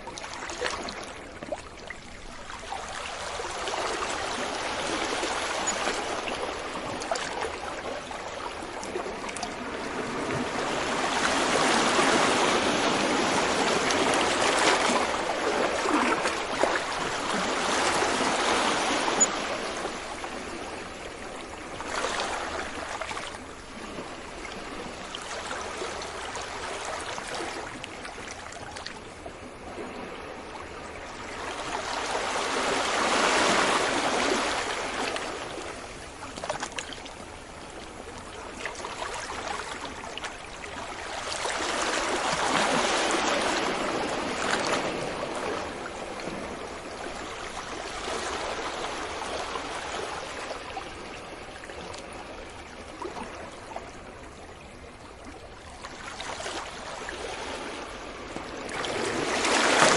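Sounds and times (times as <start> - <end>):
sea waves breaking on beach: 0.0 - 59.9.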